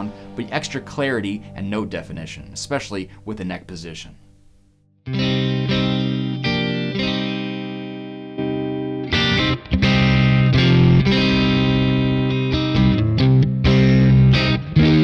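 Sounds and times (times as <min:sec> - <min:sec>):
clean electric guitar: 0:05.0 - 0:15.0.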